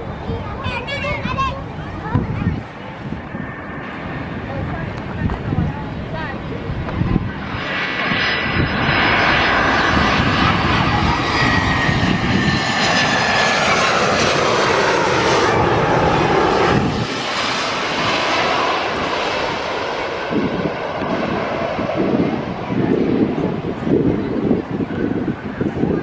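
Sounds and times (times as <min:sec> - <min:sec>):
airliner passing low overhead: 0:00.0 - 0:26.0.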